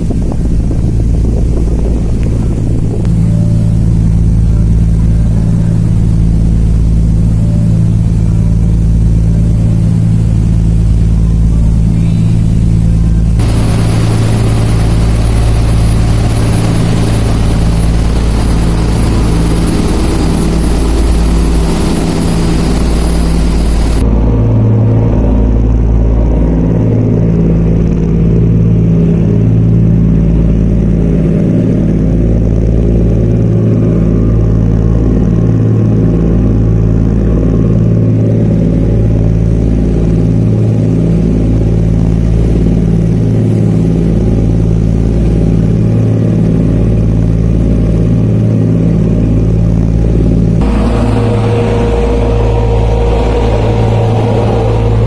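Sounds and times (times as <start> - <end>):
ferry diesel engines droning: 0.0 - 24.7, 49.7 - 55.0.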